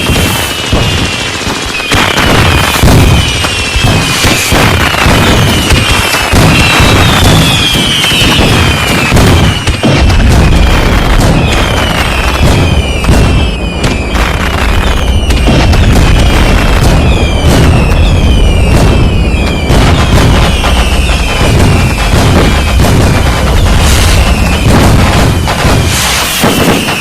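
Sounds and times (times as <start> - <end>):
fireworks bangs and cracks: 0.0 - 27.0
fireworks whistles falling in pitch: 0.0 - 27.0
continuous rumble: 15.3 - 26.1.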